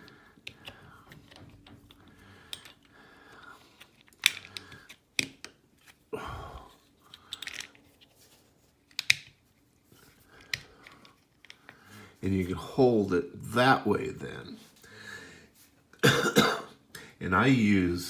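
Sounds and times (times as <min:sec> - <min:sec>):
metal parts clicking and scraping: 0:00.4 - 0:02.9, 0:03.8 - 0:05.3, 0:07.0 - 0:08.2.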